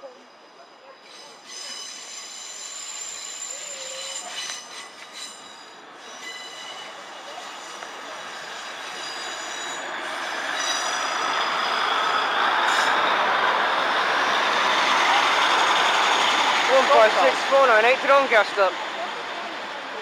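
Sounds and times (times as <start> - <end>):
high-pitched wheel squeal: 0.0 - 13.2
train running noise: 0.0 - 20.0.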